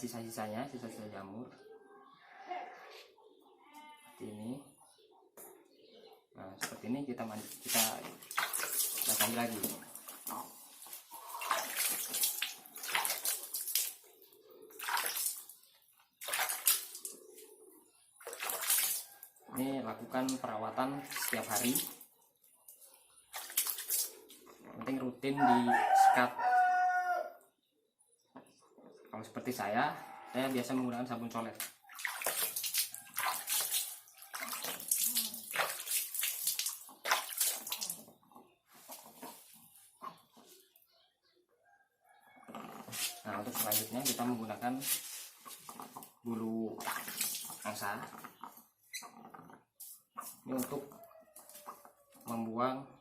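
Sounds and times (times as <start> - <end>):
water splashing: 7.4 - 15.6, 16.2 - 17.2, 18.2 - 19.2, 21.0 - 22.1, 23.3 - 24.2, 31.6 - 38.1, 46.8 - 48.2
brush scrubbing wet feathers: 7.4 - 17.5, 18.2 - 19.3, 21.0 - 22.1, 23.3 - 24.4, 31.6 - 38.0, 42.9 - 46.1, 46.8 - 48.2.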